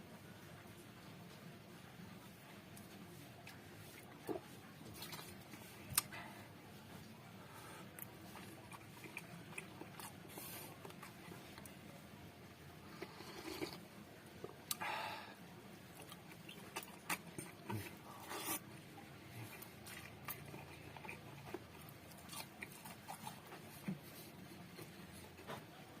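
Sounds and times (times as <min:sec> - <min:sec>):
chewing and biting food: 0:07.9 - 0:11.8, 0:15.9 - 0:18.6, 0:19.3 - 0:25.7.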